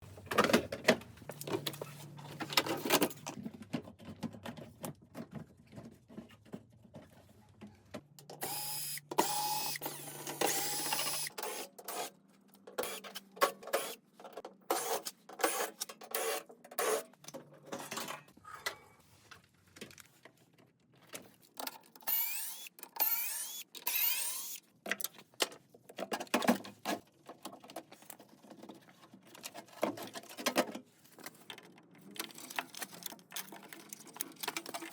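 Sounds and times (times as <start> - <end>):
tools and metal parts clattering: 0.1 - 7.2, 12.6 - 19.0, 23.8 - 34.9.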